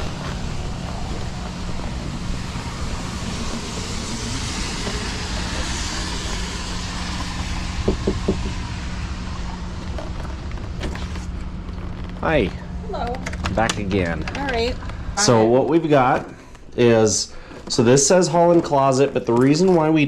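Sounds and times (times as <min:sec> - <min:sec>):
road traffic hum: 0:00.0 - 0:15.7.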